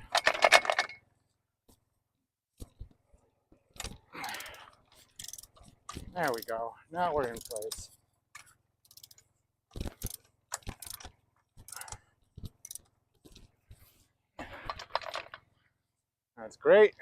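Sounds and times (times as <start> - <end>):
metal clicking and clanking: 0.0 - 1.1, 3.8 - 6.6, 7.2 - 12.9.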